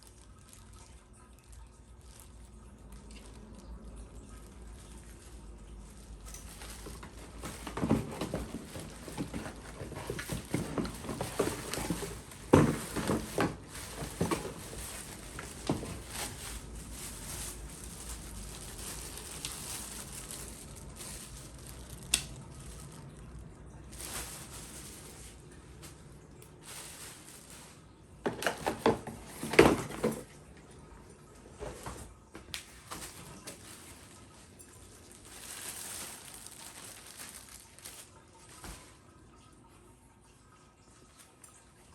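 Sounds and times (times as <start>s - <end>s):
packaging rustling: 2.0s - 39.0s.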